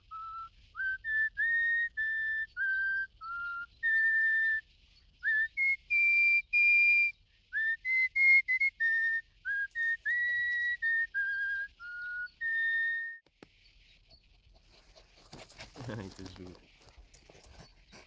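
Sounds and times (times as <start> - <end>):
person whistling a tune: 5.3 - 13.2.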